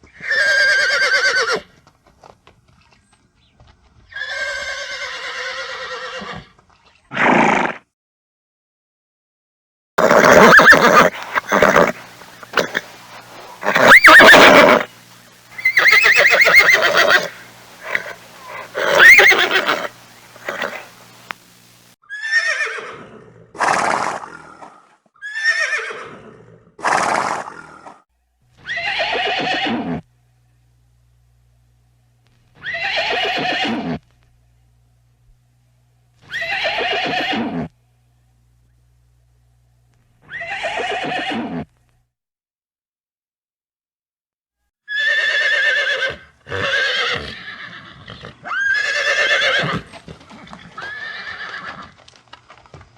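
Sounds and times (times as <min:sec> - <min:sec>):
horses neighing: 0:00.0 - 0:01.7, 0:04.1 - 0:07.8, 0:10.0 - 0:21.2, 0:22.1 - 0:28.0, 0:28.6 - 0:30.0, 0:32.6 - 0:34.0, 0:36.2 - 0:37.7, 0:40.2 - 0:41.7, 0:44.9 - 0:52.2.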